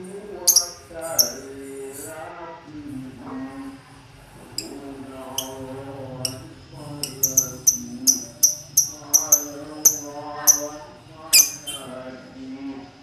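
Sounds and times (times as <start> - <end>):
man chanting: 0.0 - 13.0
lovebird chirping: 0.4 - 1.4, 5.4 - 5.6, 7.0 - 11.9.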